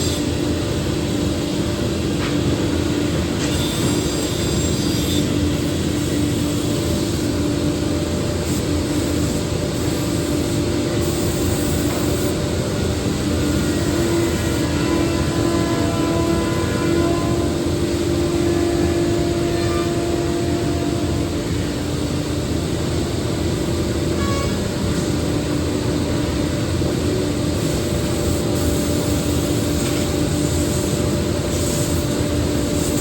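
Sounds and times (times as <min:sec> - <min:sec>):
wood router machine droning: 0:12.1 - 0:22.2.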